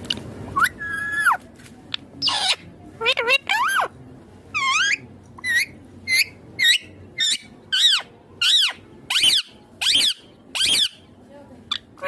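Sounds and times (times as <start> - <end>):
parakeet shrill calls: 2.2 - 3.9, 4.6 - 11.0.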